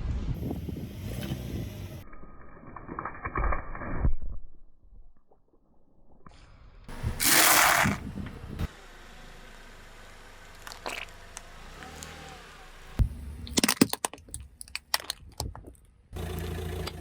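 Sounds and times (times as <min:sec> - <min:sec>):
object crunching under car tyre: 0:10.5 - 0:12.2.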